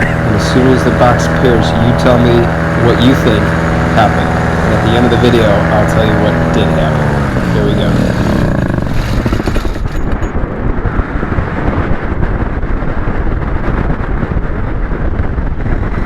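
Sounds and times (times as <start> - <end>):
paramotor engine sputtering: 0.0 - 10.7.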